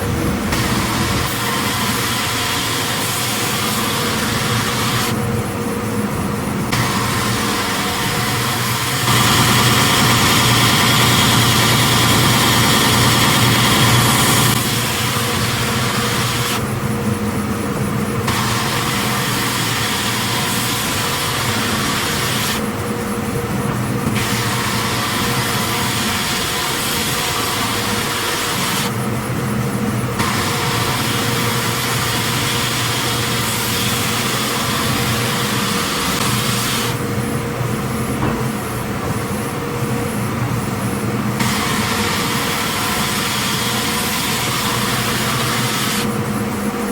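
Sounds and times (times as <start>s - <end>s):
belt sander grinding hiss: 0.0s - 46.8s
machine low hum: 3.1s - 28.2s.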